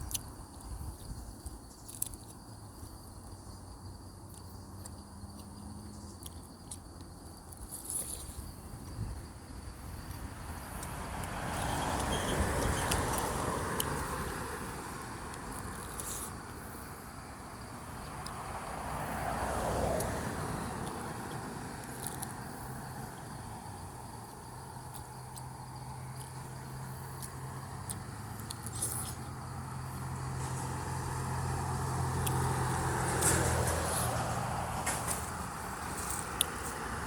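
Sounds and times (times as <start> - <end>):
faint insect chirps: 0.0 - 37.0
low engine hum: 2.9 - 37.0
vehicle passing: 7.7 - 37.0.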